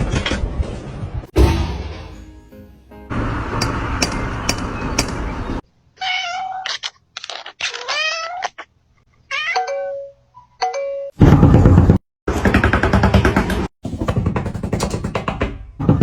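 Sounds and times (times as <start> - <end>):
sharp taps: 3.6 - 5.3
cat meowing: 6.0 - 8.7, 9.3 - 9.9.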